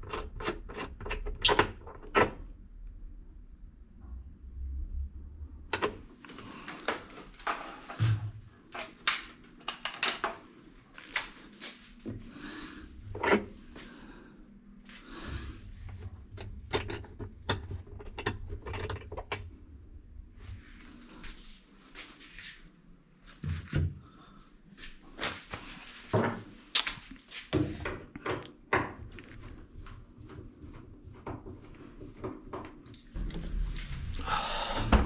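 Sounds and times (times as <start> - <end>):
low rumble of handling: 12.0 - 21.4, 32.8 - 35.0
wrench clinking on metal nut: 16.4 - 17.6.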